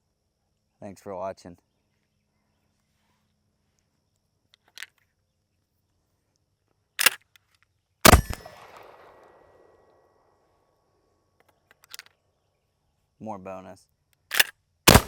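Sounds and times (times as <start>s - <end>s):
sharp metallic impacts: 8.1s - 8.8s.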